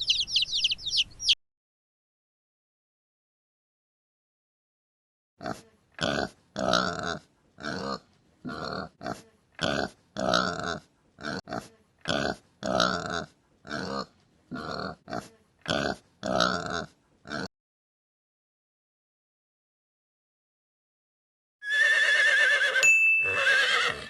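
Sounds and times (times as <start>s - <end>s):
pig grunting: 5.4s - 17.5s.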